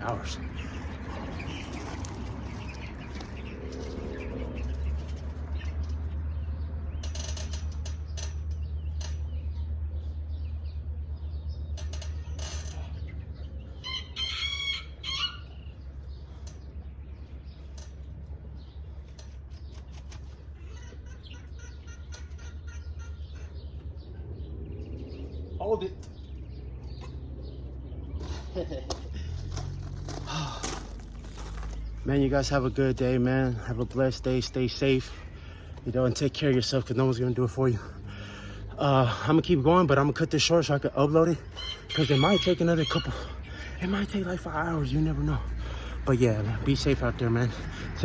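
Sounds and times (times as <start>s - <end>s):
low outdoor rumble: 0.0s - 48.0s
rooster crowing: 13.8s - 15.6s, 41.5s - 43.2s.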